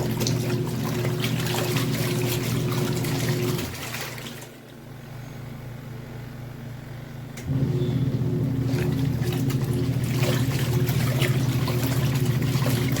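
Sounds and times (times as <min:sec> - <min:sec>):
water churning and splashing: 0:00.0 - 0:04.8, 0:08.2 - 0:13.0
washing machine motor humming: 0:00.0 - 0:13.0.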